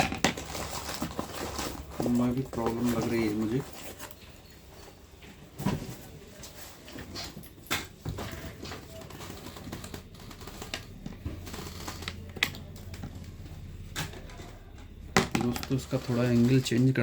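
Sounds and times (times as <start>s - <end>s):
low steady hum: 7.4s - 17.0s
small parts and tools clicking: 7.7s - 17.0s.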